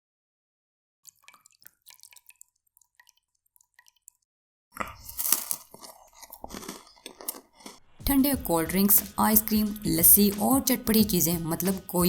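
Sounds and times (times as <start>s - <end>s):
wet drips: 1.0s - 7.0s
crunching and chewing food: 1.0s - 8.2s.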